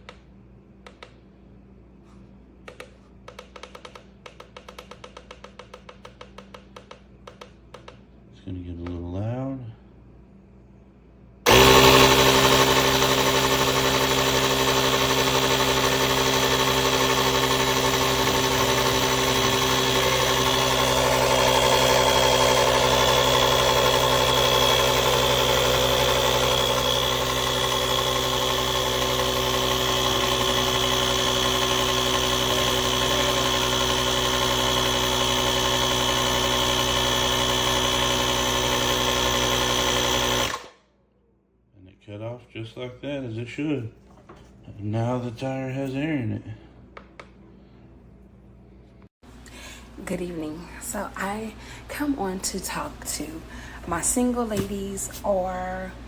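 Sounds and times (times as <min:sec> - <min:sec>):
air compressor running: 0:11.5 - 0:40.8.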